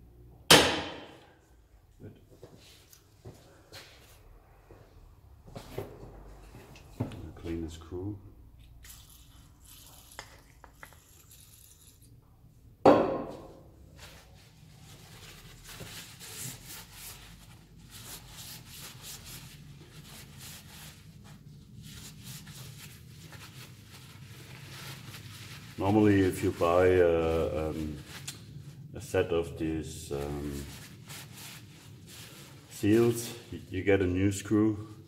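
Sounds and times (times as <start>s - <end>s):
rubbing strokes on metal screw: 8.8s - 12.1s.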